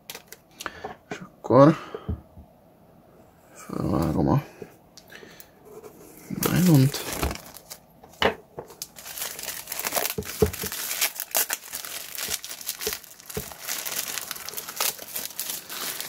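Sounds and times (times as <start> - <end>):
plastic shrink-wrap crinkling: 6.4 - 7.8, 8.7 - 16.0.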